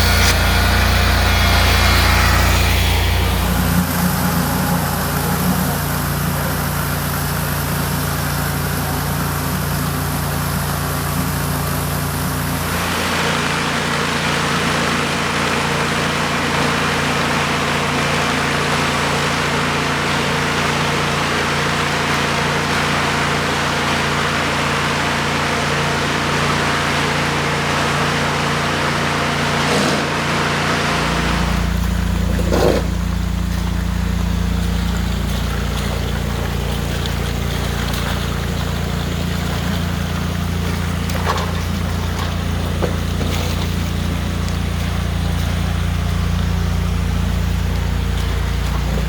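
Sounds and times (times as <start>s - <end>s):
water spray hissing: 0.0s - 24.2s, 31.2s - 49.0s
pressure washer engine running: 0.0s - 49.0s.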